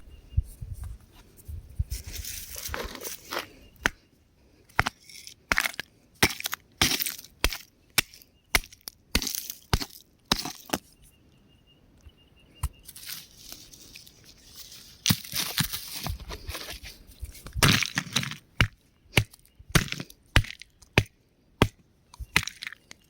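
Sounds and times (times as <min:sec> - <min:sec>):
rock cracking and crumbling: 0:14.7 - 0:23.0.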